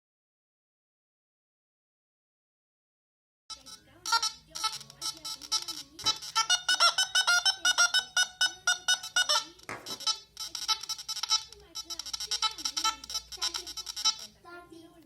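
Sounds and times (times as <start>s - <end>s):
quick bright melody: 3.6s - 14.4s.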